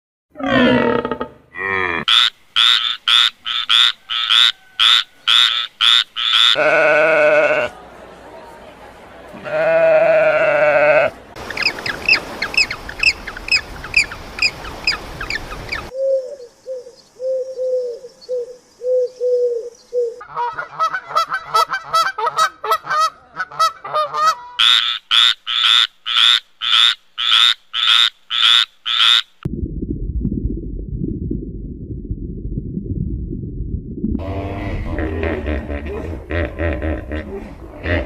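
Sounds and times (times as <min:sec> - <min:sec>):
low croaks: 0:00.3 - 0:07.7, 0:24.6 - 0:38.0
animal bleat: 0:06.6 - 0:07.7, 0:09.4 - 0:11.2.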